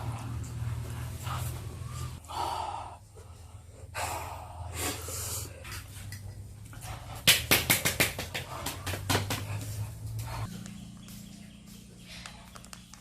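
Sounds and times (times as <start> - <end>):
person breathing hard: 0.0 - 5.7.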